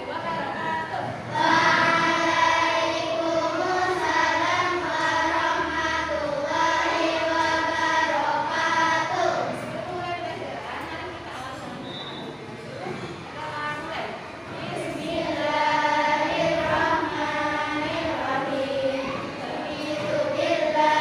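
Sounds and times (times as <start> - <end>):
children singing in unison: 1.2 - 10.0, 14.4 - 21.0.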